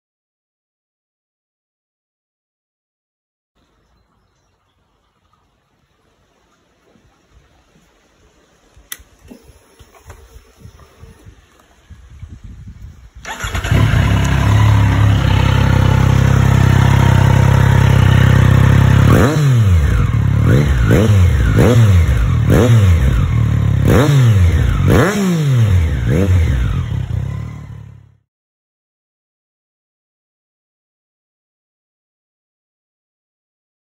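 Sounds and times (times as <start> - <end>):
motorcycle engine revving: 13.2 - 28.2.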